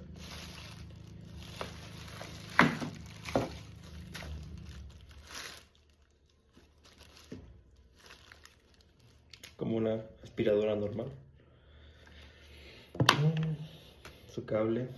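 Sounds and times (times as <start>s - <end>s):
plastic packaging crinkling: 0.0s - 9.7s.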